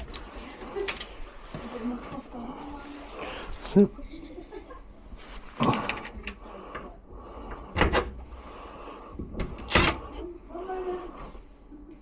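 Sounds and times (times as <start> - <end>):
door lock hardware clunking: 7.6 - 8.2, 9.4 - 10.2.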